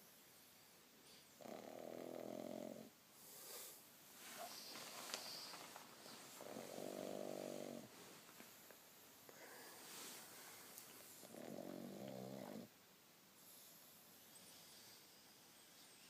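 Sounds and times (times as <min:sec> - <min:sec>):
dog snoring: 0:01.1 - 0:02.9, 0:06.4 - 0:07.9, 0:11.1 - 0:12.7
soft breathing: 0:03.2 - 0:12.7.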